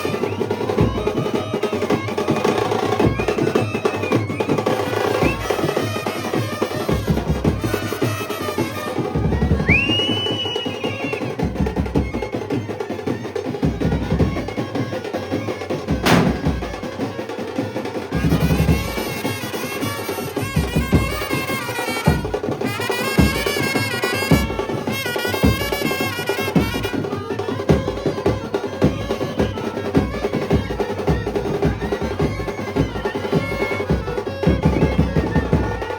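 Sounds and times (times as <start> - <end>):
steady drumming: 0.0 - 35.9
brass band playing: 5.0 - 9.9, 16.0 - 17.0, 18.0 - 27.2
sharp crack: 16.0 - 16.8.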